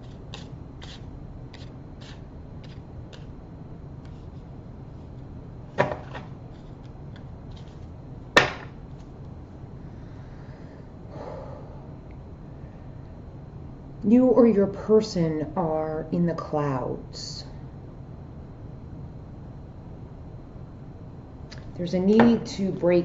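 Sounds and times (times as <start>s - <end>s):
cards slapped on a table: 5.8s - 6.3s, 8.4s - 8.8s.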